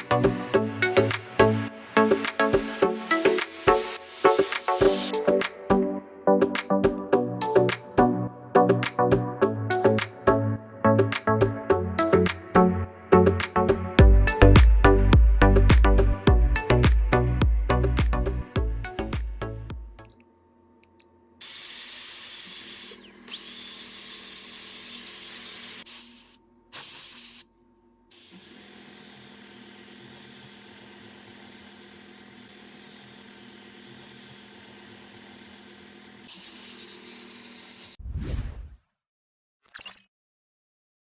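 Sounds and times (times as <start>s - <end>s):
dental drill whining: 21.4s - 27.5s, 28.2s - 38.0s.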